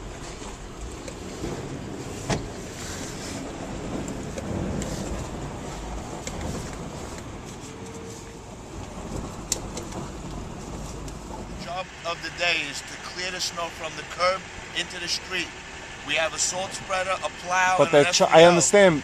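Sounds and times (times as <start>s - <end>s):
engine and traffic rumble: 0.0s - 19.0s.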